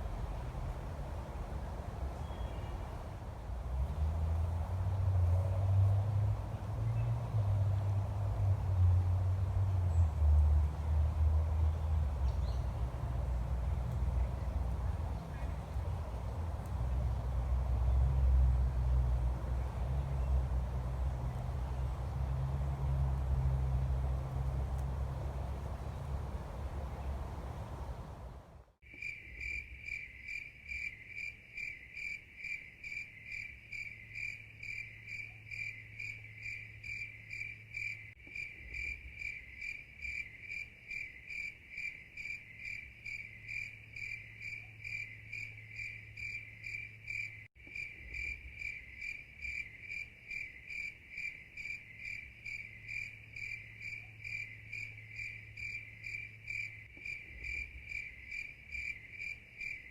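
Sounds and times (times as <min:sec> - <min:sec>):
cricket chirping: 0:28.8 - 0:59.9.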